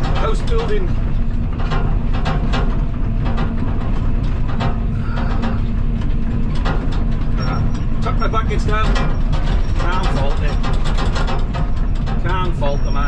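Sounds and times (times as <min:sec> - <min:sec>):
excavator diesel engine running: 0:00.0 - 0:13.0
metallic clanks and knocks: 0:00.0 - 0:13.0.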